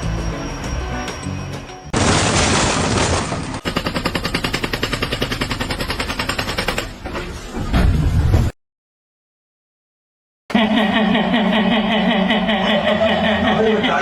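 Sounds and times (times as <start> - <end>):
rapid sharp mechanical impacts: 2.0 - 7.2.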